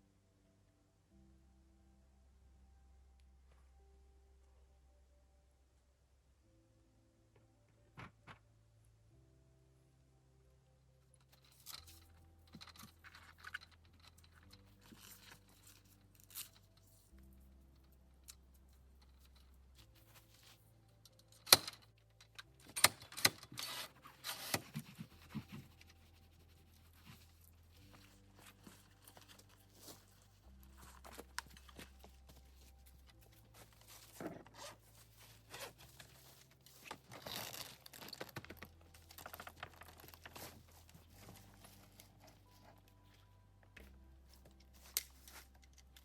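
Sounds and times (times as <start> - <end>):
faint low hum: 0.0 - 46.0
handling noises rustling: 11.2 - 46.0.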